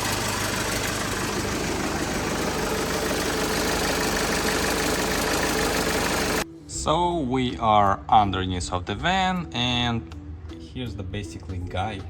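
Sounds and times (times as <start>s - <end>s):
diesel engine idling: 0.0s - 6.4s
exhaust rattling: 0.0s - 6.4s.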